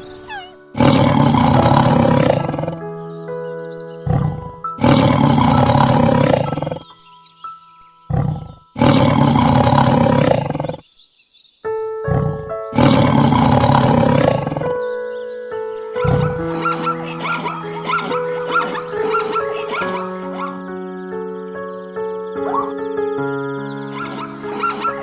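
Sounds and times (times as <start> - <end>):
big cat roaring: 0.0 - 2.8, 4.0 - 6.9, 8.1 - 10.8, 12.1 - 14.8, 16.0 - 16.6
background music with held notes: 0.0 - 25.0.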